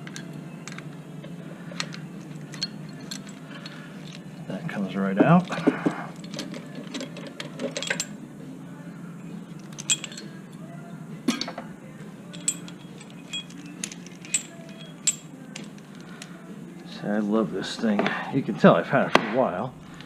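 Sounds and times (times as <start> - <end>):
metal tools clinking: 0.0 - 4.6, 5.2 - 8.2, 9.5 - 10.7, 11.3 - 16.4
steady low hum: 0.0 - 20.0.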